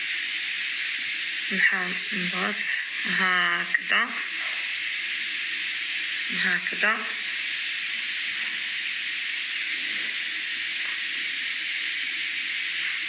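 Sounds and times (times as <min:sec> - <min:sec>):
steady background hiss: 0:00.0 - 0:13.0.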